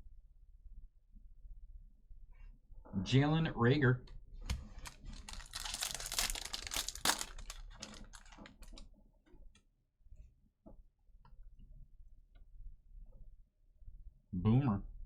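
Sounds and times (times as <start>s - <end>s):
plastic wrapper crinkling and tearing: 4.6s - 8.9s
cards clicking: 4.8s - 8.5s.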